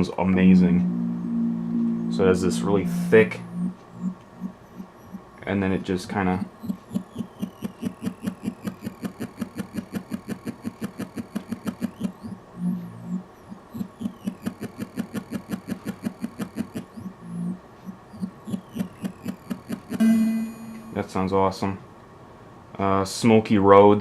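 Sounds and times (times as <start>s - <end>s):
pulsing wobble bass: 0.0s - 5.4s, 10.9s - 14.5s, 16.8s - 19.3s
short held synth notes: 0.0s - 7.5s, 20.0s - 21.1s
gliding synthesizer pitches: 0.0s - 14.9s, 16.6s - 21.0s.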